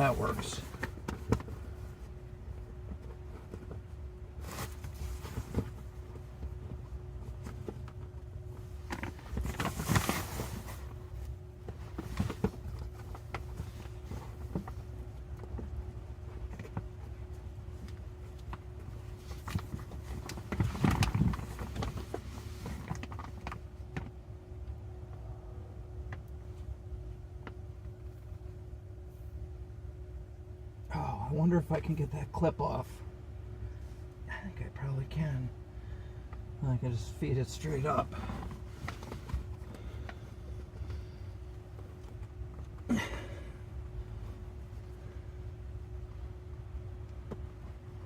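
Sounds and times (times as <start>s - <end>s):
padding rustling and scraping: 0.0s - 24.2s, 37.6s - 41.0s
cabin fan humming: 0.0s - 48.0s.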